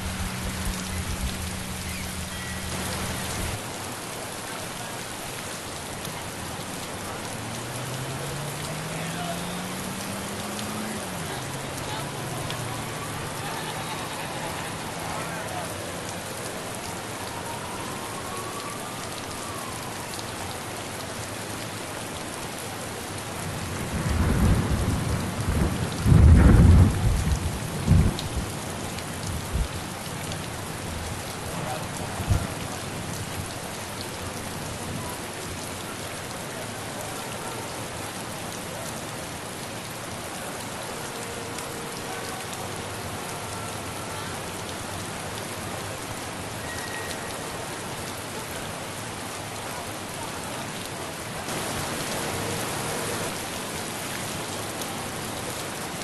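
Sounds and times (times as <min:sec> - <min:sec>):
steady rain falling: 0:00.0 - 0:56.0
thunder rumble: 0:23.8 - 0:28.5.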